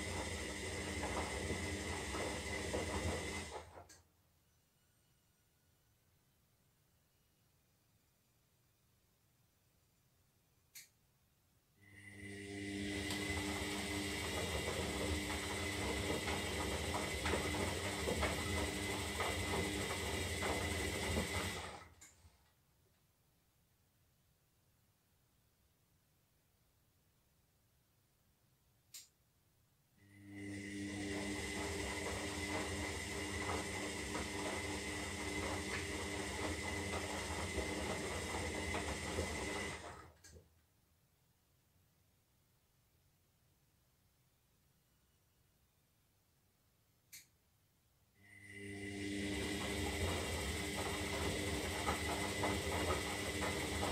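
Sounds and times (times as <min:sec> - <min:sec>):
washing machine motor hum: 0:00.0 - 0:04.0, 0:11.8 - 0:22.4, 0:30.0 - 0:40.4, 0:48.2 - 0:53.9.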